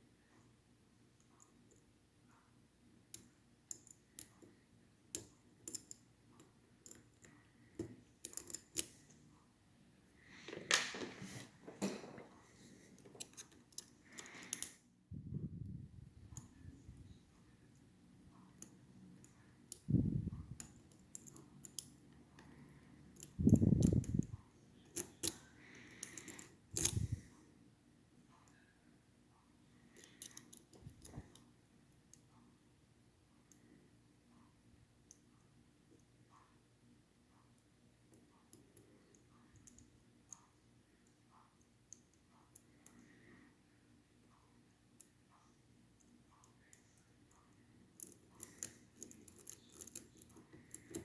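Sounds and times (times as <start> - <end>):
lock pick metallic clicks: 5.1 - 6.0, 6.8 - 9.0, 20.5 - 22.0, 23.2 - 24.3, 24.9 - 25.4, 26.0 - 27.2, 48.0 - 51.0.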